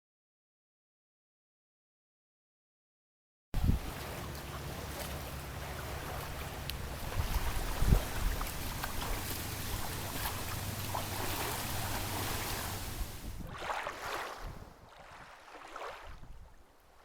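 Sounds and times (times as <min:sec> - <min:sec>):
water washing: 0:03.6 - 0:14.4
wind rumbling on microphone: 0:03.6 - 0:15.3, 0:16.0 - 0:16.7.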